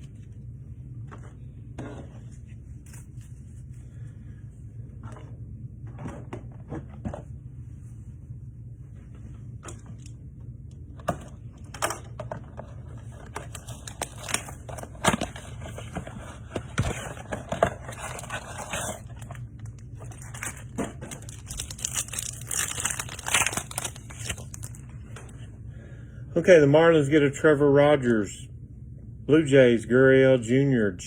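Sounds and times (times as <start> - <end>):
plastic wrappers crinkling: 13.3 - 15.7, 16.8 - 25.2.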